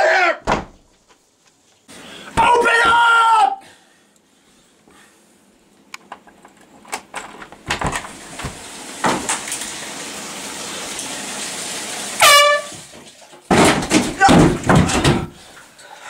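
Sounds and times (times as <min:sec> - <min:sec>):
shower water running: 0:07.7 - 0:16.0.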